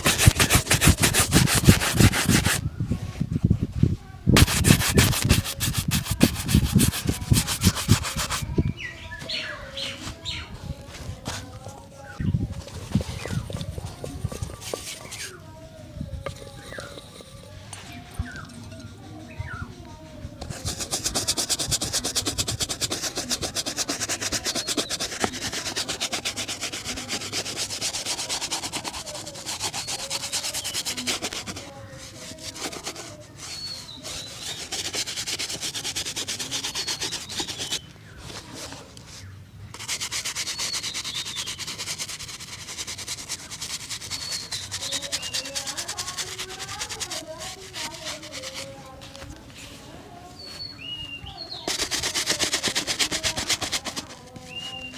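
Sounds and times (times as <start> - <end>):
shoe being buffed: 0.0 - 2.7, 4.4 - 8.6, 12.5 - 15.5, 20.4 - 38.9, 39.7 - 49.4, 51.4 - 54.9.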